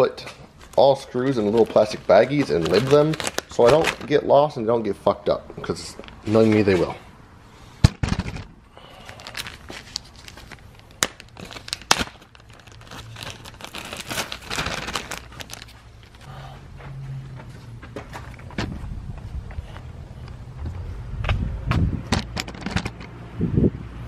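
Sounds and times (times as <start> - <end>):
plastic baggies crinkling: 0.6 - 4.5, 8.0 - 16.3.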